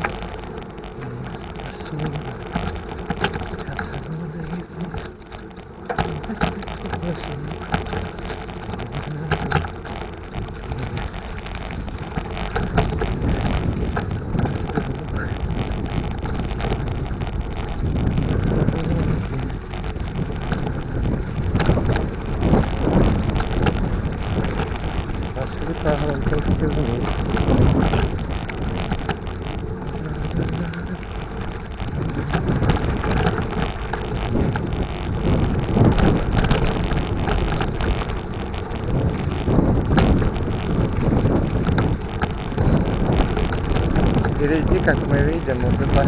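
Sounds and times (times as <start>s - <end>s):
bicycle rolling on dirt road: 0.0s - 46.0s
knocks and rattles from bumps: 0.0s - 46.0s
wind on microphone: 0.0s - 46.0s.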